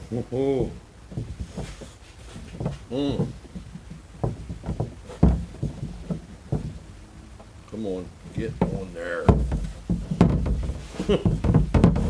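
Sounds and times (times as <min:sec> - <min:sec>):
knocks and clicks of parts: 0:08.4 - 0:12.0.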